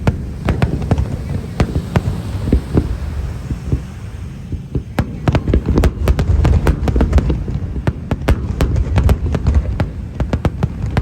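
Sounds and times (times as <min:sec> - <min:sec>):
fireworks booming: 0:00.0 - 0:11.0
fireworks crackling pops: 0:00.0 - 0:11.0.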